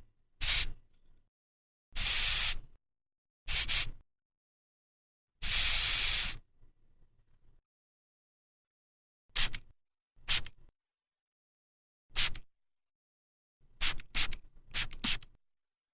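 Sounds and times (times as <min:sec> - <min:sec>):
spray can hissing: 0:00.4 - 0:00.7, 0:02.0 - 0:02.6, 0:03.5 - 0:04.0, 0:05.4 - 0:06.4, 0:09.4 - 0:09.6, 0:10.3 - 0:10.6, 0:12.2 - 0:12.5, 0:13.8 - 0:15.4.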